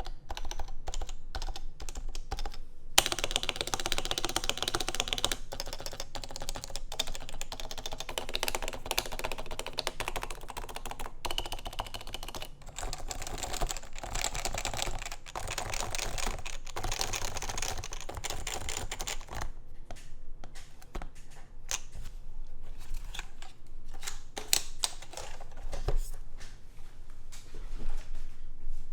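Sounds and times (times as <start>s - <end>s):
fast keyboard typing: 0.0s - 19.6s, 24.0s - 25.6s.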